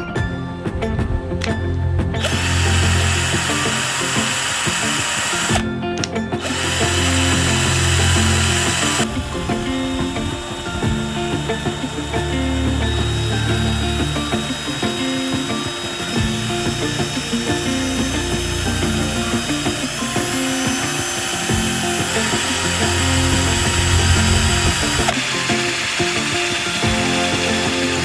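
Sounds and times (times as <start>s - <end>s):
background music: 0.0s - 28.0s
cordless drill motor running: 2.2s - 5.6s, 6.4s - 9.2s, 13.0s - 28.0s.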